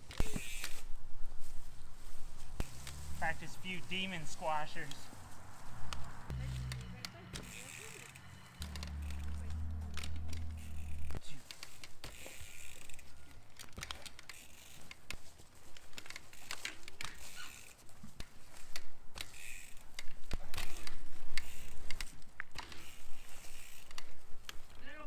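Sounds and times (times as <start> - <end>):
bicycle rattling and clicking: 0.0 - 3.5, 5.8 - 24.8
rear hub ratchet ticking: 6.3 - 11.2
low wind rumble: 8.5 - 11.2.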